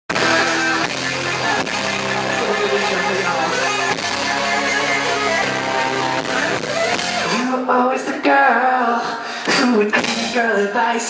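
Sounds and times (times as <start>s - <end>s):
bass guitar: 0.1s - 7.4s
strummed guitar chords: 0.1s - 7.6s.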